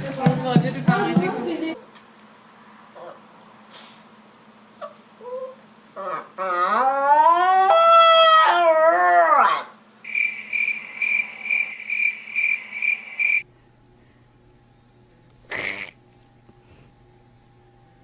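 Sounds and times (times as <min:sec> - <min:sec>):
dog howling: 0:05.2 - 0:09.8.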